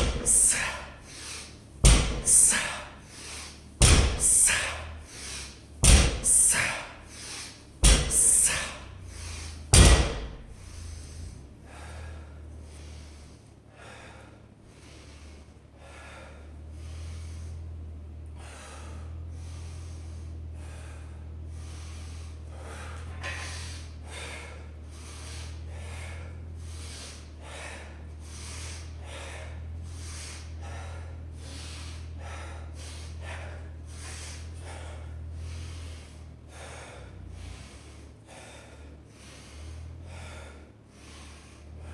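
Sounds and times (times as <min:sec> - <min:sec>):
loud thuds: 0:00.0 - 0:00.9, 0:01.8 - 0:02.9, 0:03.8 - 0:05.2, 0:05.8 - 0:07.1, 0:07.8 - 0:11.3
low hum: 0:00.0 - 0:29.0
person breathing hard: 0:00.0 - 0:41.9.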